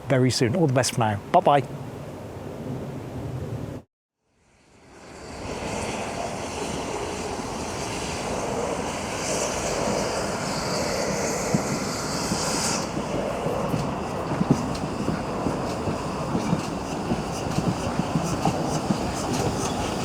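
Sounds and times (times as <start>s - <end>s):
loud high steam hiss: 4.4s - 20.0s
train running on rails: 4.6s - 20.0s.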